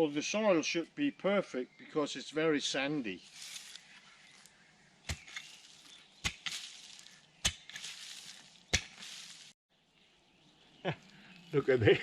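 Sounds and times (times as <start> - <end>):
rustle of loosened soil: 3.1 - 9.6
digging tool striking soil: 5.0 - 9.6.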